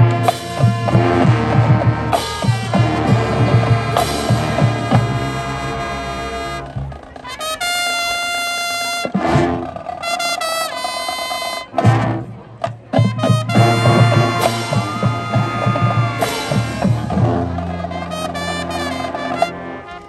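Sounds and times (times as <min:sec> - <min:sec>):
percussion hits: 0:00.0 - 0:19.6
brass long held notes: 0:00.0 - 0:20.0
marching band chord: 0:00.0 - 0:20.0.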